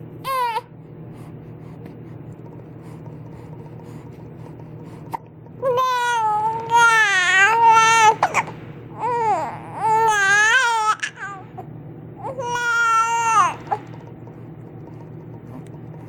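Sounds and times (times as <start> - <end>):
infant crying: 0.2 - 0.7, 5.6 - 11.5, 12.2 - 13.9.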